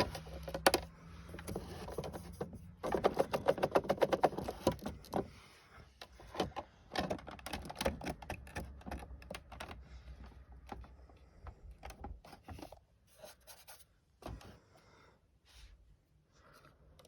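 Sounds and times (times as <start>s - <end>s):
hard plastic clicking and rattling: 0.0s - 5.4s, 6.0s - 12.8s.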